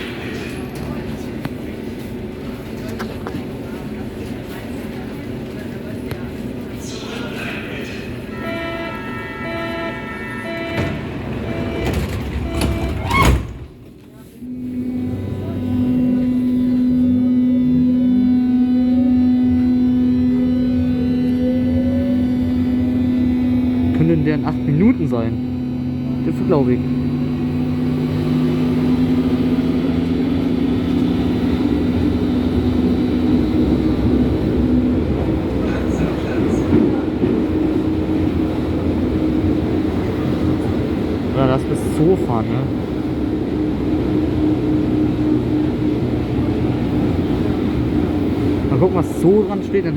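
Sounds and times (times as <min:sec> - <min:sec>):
train electric whine pulsing: 0:00.0 - 0:49.9.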